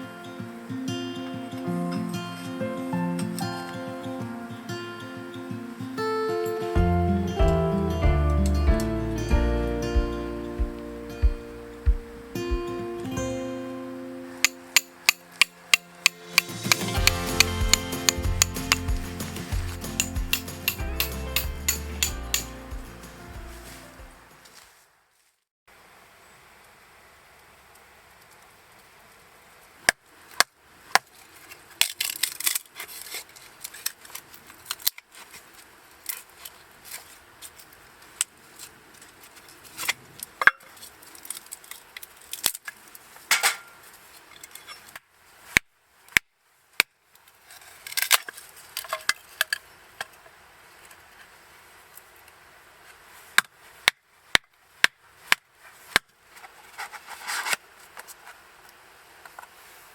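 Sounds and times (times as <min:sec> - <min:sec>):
rustling bursts: 0:15.6 - 0:25.4.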